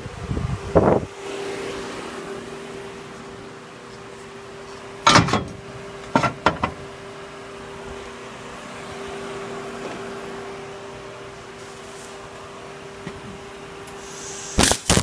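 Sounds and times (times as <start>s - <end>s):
steady hum: 0.0s - 15.0s
welding arc bursts: 14.0s - 15.0s.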